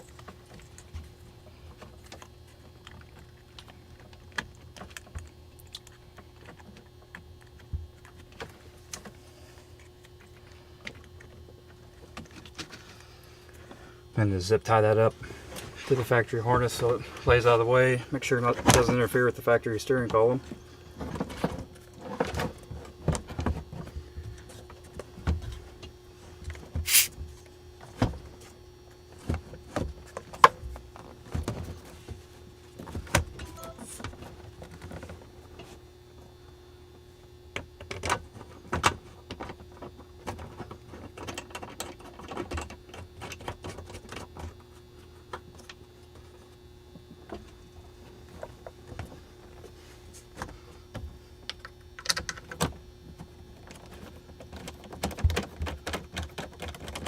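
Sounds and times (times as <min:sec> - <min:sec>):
faint steady hum: 0:00.0 - 0:57.0
sharp rasp: 0:26.9 - 0:27.1.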